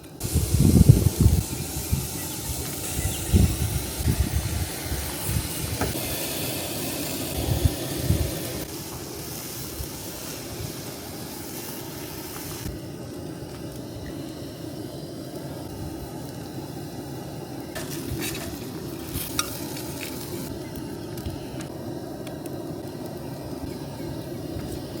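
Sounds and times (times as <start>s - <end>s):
food sizzling in a pan: 0.2s - 12.7s, 17.7s - 21.2s.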